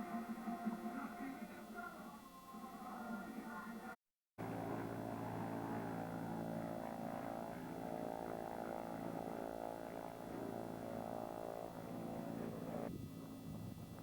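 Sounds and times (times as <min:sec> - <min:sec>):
propeller aircraft engine droning: 0:04.4 - 0:14.0.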